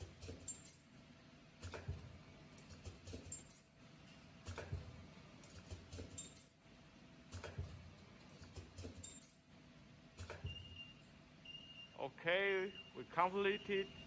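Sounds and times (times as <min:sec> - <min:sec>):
ultrasonic weld whine: 0:03.3 - 0:03.8, 0:06.2 - 0:06.7, 0:09.0 - 0:09.6.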